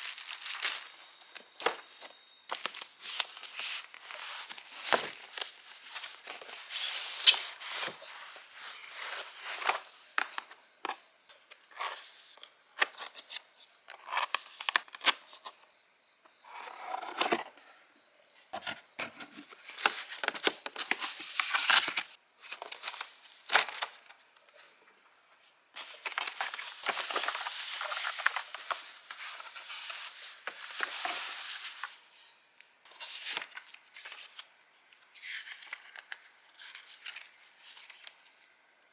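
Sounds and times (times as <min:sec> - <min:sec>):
packaging rustling and tearing: 0:00.0 - 0:08.1, 0:19.6 - 0:24.1, 0:25.8 - 0:32.0.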